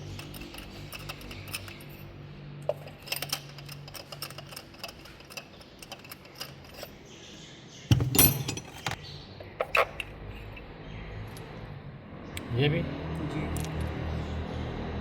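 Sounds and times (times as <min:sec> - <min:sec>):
hand tools clinking against metal: 0:00.0 - 0:02.0, 0:02.7 - 0:07.0, 0:07.9 - 0:09.0.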